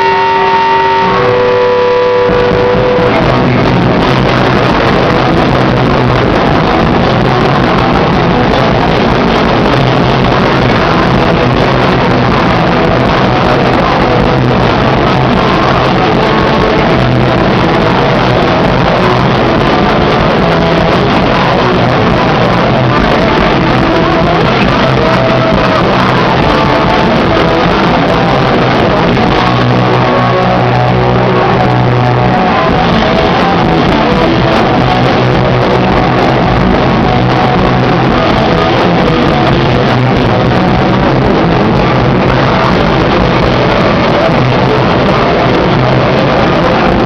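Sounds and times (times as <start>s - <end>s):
loud live rock band: 0.0s - 47.0s.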